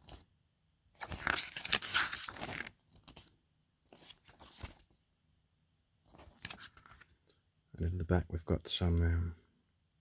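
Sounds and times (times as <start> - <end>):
paper rustling and crinkling: 1.0 - 5.0, 6.1 - 7.2.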